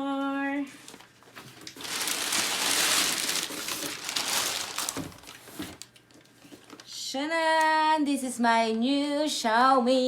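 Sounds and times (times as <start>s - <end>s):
packaging crinkling and rustling: 0.8s - 7.0s.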